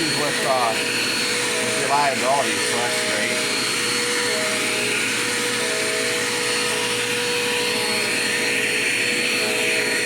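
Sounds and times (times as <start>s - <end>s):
vacuum cleaner running: 0.0s - 10.0s.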